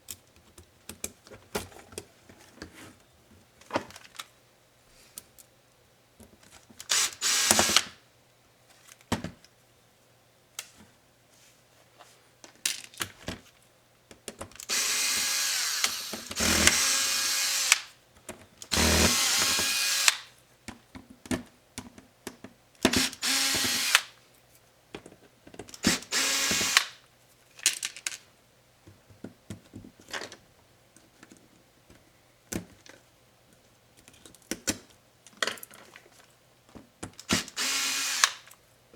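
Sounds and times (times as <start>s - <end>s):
screws and plastic parts clicking: 6.8s - 7.9s, 14.6s - 17.9s, 18.6s - 20.3s, 22.8s - 24.1s, 25.6s - 27.0s, 37.1s - 38.6s
electric screwdriver whirring: 6.9s - 8.0s, 14.7s - 17.9s, 18.7s - 20.3s, 22.9s - 24.1s, 25.8s - 27.0s, 37.3s - 38.4s.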